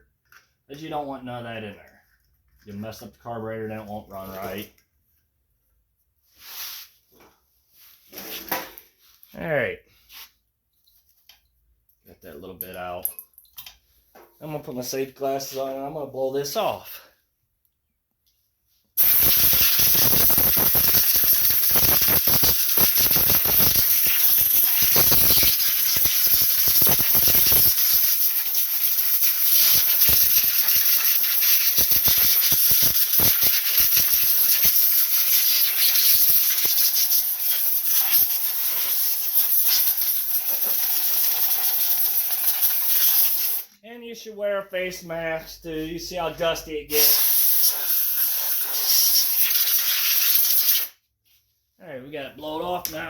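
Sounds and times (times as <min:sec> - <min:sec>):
compressed air hissing: 0:19.0 - 0:43.7, 0:46.9 - 0:50.9.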